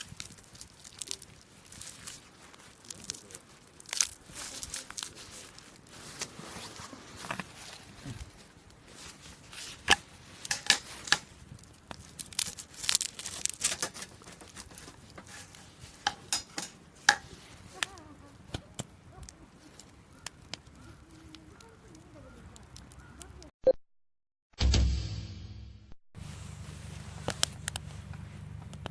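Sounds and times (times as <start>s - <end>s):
campfire wood crackling: 0.0s - 23.5s, 26.2s - 28.9s.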